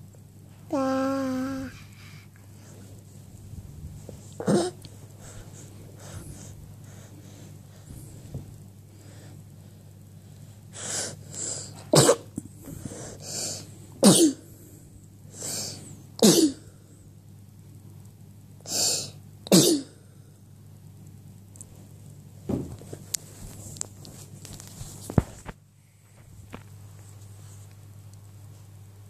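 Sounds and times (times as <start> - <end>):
person sneezing: 12.0 - 12.3.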